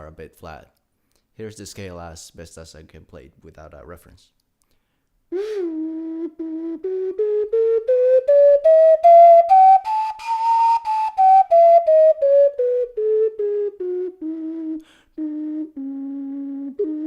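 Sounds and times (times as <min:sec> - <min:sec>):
ocarina playing a scale: 0:05.3 - 0:17.0.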